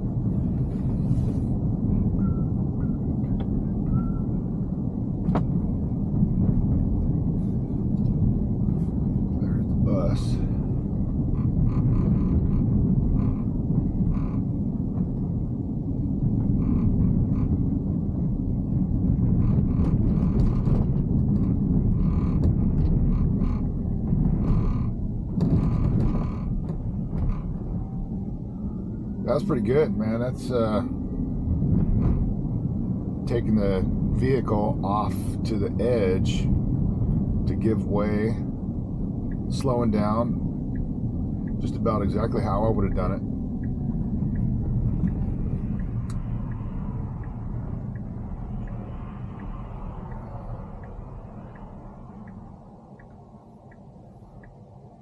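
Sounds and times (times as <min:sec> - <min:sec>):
road and tyre rumble: 0:00.0 - 0:55.0
tyres on wet road: 0:36.2 - 0:55.0.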